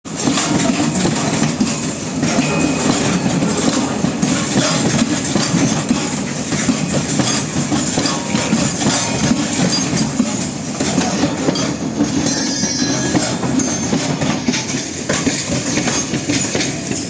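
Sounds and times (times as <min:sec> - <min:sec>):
train rumble: 0:00.1 - 0:17.0
train wheels clattering on track: 0:00.1 - 0:17.0.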